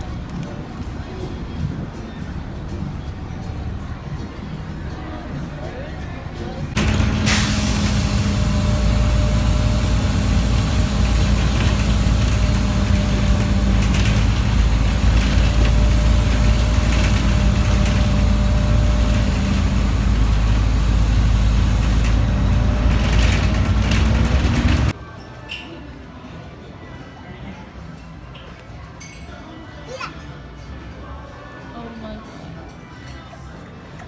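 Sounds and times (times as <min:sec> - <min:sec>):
engine running steadily: 0:00.0 - 0:25.0.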